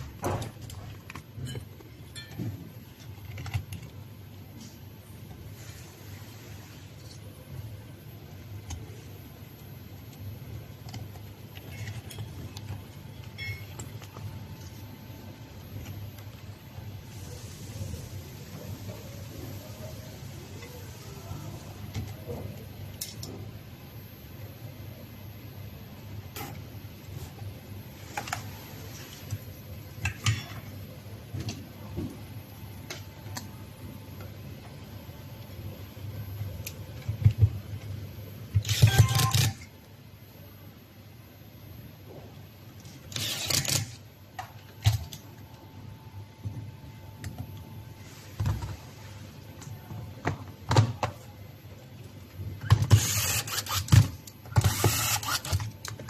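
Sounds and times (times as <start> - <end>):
low steady hum: 0.0 - 52.7
small parts and tools clicking: 38.6 - 39.7, 43.1 - 44.0, 52.7 - 56.0.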